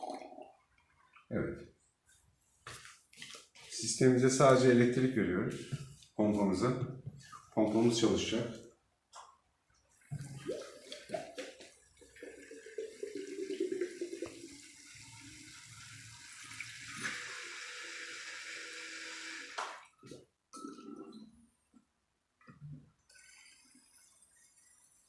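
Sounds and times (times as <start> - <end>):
water gurgling and splashing: 0.0 - 1.3, 10.1 - 18.5.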